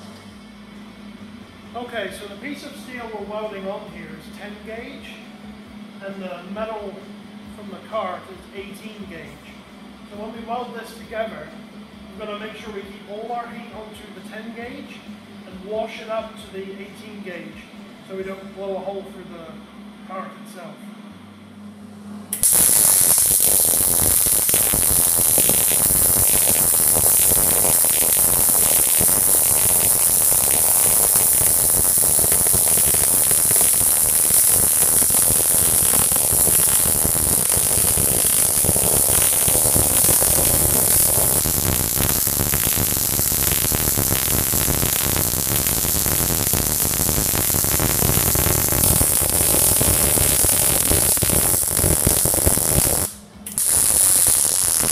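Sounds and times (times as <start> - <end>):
welder arc crackling sizzle: 22.3 - 54.9.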